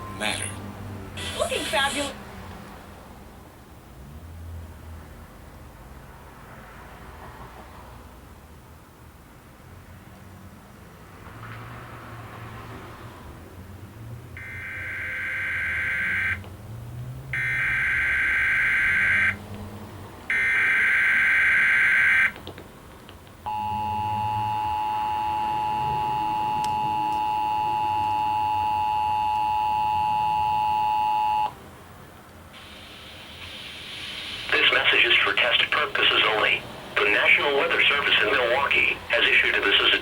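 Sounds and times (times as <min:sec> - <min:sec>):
two-tone alert signal: 0:23.5 - 0:31.5.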